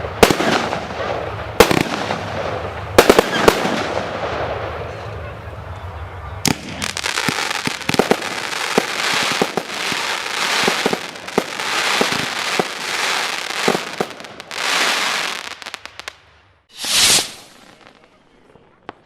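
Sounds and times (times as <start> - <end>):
firework bangs: 0.0 - 5.3, 6.4 - 19.0
crackling hiss: 6.5 - 18.5.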